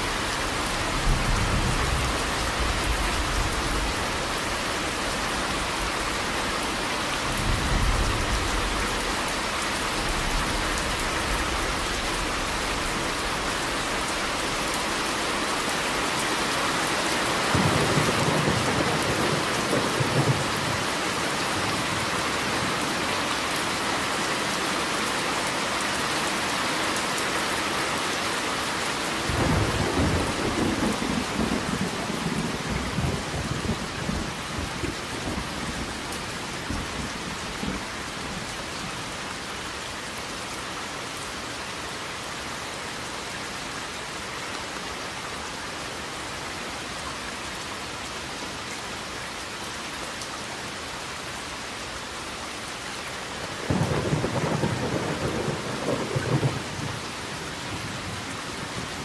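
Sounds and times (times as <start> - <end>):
steady rain falling: 0.0 - 59.0
thunder rumbling: 53.6 - 57.0.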